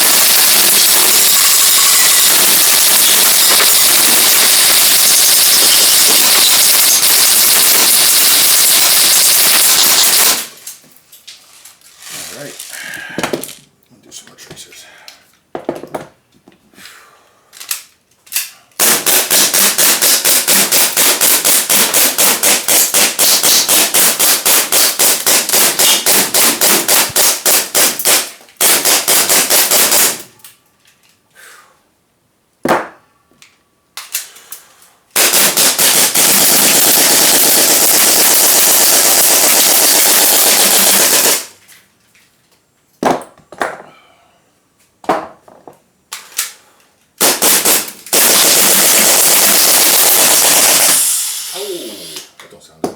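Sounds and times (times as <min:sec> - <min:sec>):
airsoft gun firing: 0:00.0 - 0:10.6, 0:18.8 - 0:30.3, 0:35.2 - 0:41.5, 0:47.2 - 0:51.6.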